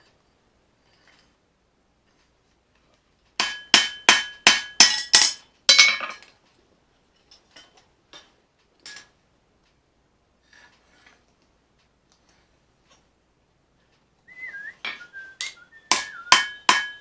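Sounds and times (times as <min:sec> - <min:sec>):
hammer striking blade on anvil: 0:03.4 - 0:05.4, 0:14.8 - 0:17.0.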